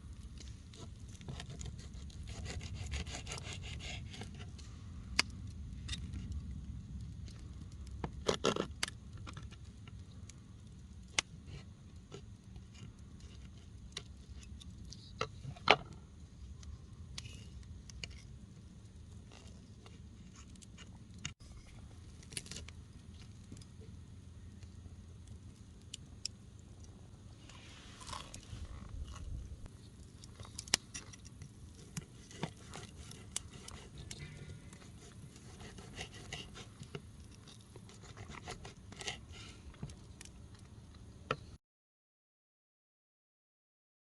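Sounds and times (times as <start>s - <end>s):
campfire crackling: 0.0s - 41.5s
low steady rumble: 0.0s - 41.6s
light scrapes: 27.4s - 39.7s.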